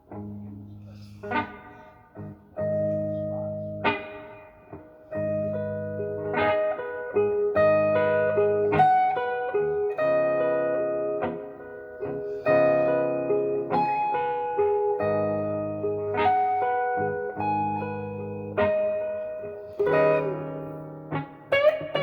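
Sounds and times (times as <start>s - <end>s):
electric guitar playing slow blues: 0.0s - 22.0s.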